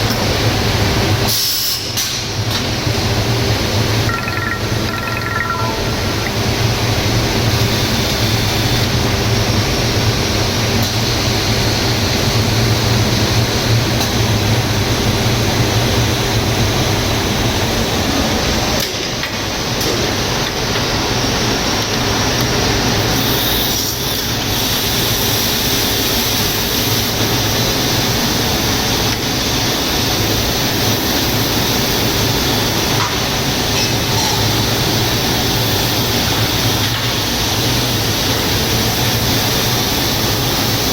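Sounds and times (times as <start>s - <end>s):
machining centre running: 2.7s - 10.1s.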